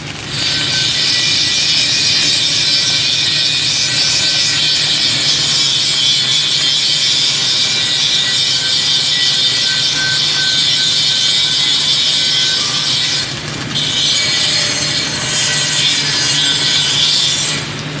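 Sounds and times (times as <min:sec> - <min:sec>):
welding arc crackling hiss: 0:00.0 - 0:18.0.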